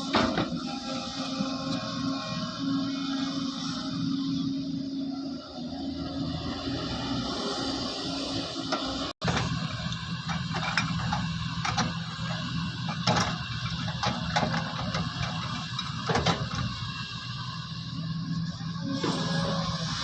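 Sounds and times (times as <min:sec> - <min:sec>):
excavator diesel engine running: 0:00.0 - 0:20.0
sharp clanks and knocks: 0:09.2 - 0:16.8.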